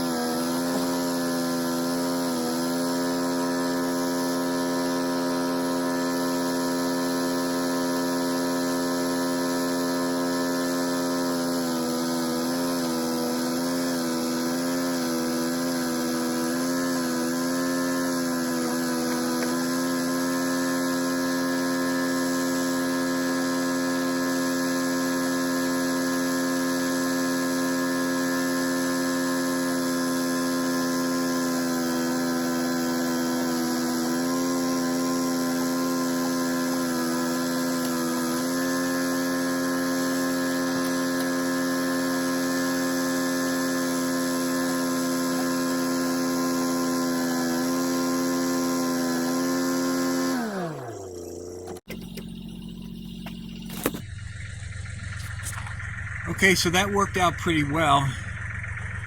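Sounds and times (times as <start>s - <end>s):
excavator diesel engine droning: 0.0s - 11.6s, 49.3s - 59.0s.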